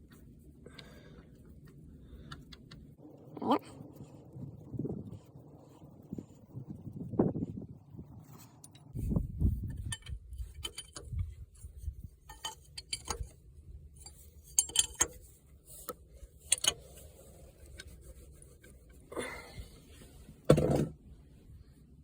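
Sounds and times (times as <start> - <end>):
wrench clinking on metal fittings: 9.7 - 11.2, 12.2 - 13.3, 14.0 - 15.2.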